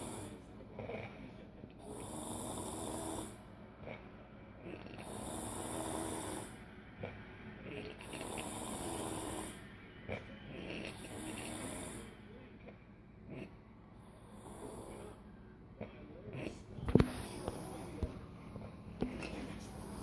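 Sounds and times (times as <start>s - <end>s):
woman snoring: 0.0s - 0.4s, 1.8s - 3.4s, 4.7s - 6.6s, 7.7s - 12.1s.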